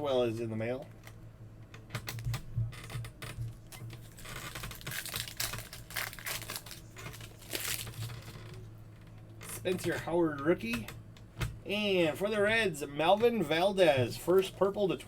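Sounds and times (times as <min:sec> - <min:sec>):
steady low hum: 0:00.0 - 0:15.0
cards rustling and clicking: 0:03.7 - 0:08.3
wrapper crinkling: 0:03.7 - 0:08.4.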